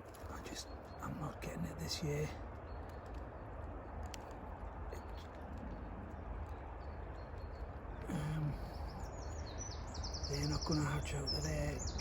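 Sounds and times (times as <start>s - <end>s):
faint high bird chirps: 4.8s - 12.0s
low murmured voice: 8.0s - 8.9s.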